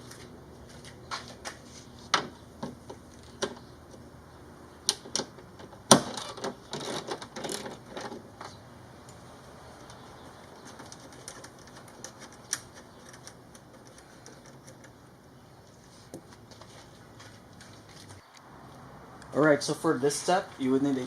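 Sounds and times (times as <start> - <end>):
bolts rattling: 4.9 - 8.6, 9.8 - 15.1.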